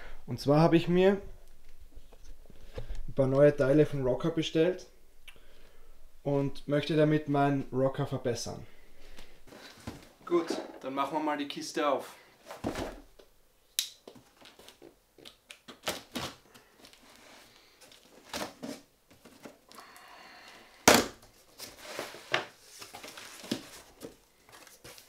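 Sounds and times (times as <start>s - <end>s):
cardboard and packing rustling: 9.5s - 10.4s, 12.4s - 13.2s, 14.1s - 19.8s, 21.1s - 25.0s.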